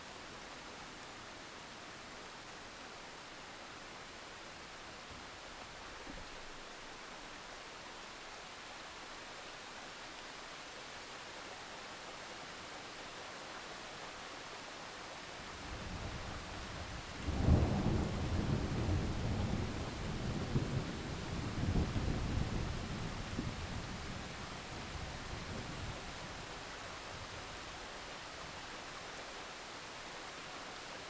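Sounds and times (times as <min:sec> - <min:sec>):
steady rain hiss: 0:00.0 - 0:31.0
thunder rumbling: 0:17.2 - 0:24.2.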